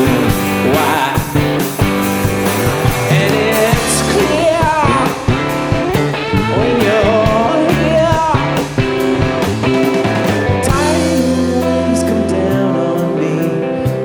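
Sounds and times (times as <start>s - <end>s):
person singing: 0.0s - 1.8s, 2.6s - 9.2s, 10.2s - 14.0s
live rock band playing: 0.0s - 14.0s.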